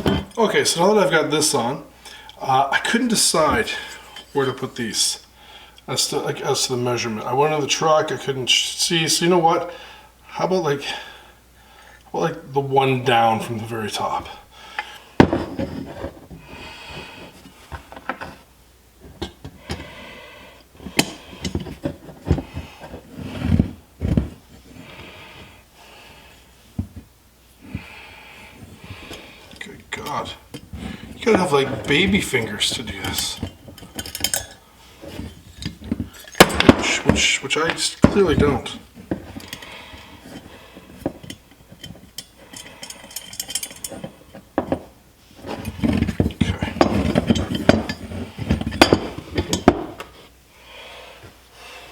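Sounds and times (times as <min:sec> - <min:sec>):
heavy thumps: 0:15.2 - 0:17.2, 0:28.6 - 0:39.5
metal fasteners clicking and tapping: 0:33.0 - 0:34.6, 0:41.2 - 0:44.0.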